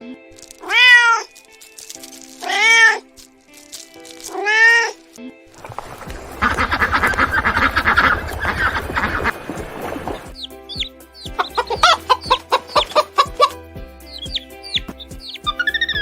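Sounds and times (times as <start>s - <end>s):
background music: 0.0s - 16.0s
cat meowing: 0.5s - 1.4s, 2.4s - 3.1s, 4.3s - 5.0s.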